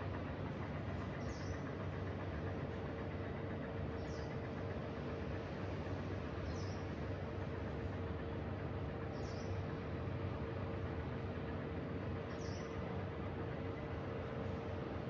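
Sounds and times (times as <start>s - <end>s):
low rumble and hiss: 0.0s - 15.0s
small bird chirping: 12.3s - 12.7s.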